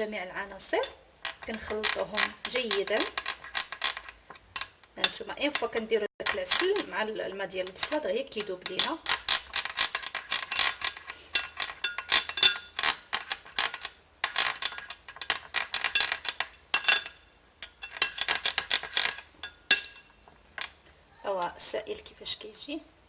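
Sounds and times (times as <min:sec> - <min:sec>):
spoon clinking in a bowl: 0:11.4 - 0:12.8, 0:19.4 - 0:20.2.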